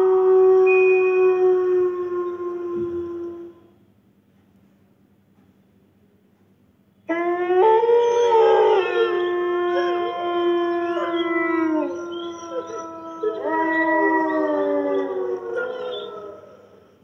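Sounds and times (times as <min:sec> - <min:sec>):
wolves howling: 0:00.0 - 0:03.7, 0:07.1 - 0:17.0.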